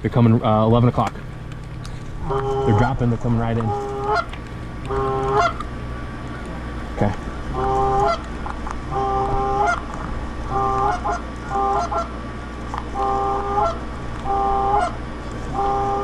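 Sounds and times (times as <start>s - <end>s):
low steady rumble: 0.0s - 16.0s
goose honking: 2.2s - 5.6s, 7.3s - 8.3s, 8.9s - 9.8s, 10.5s - 12.2s, 12.9s - 16.0s.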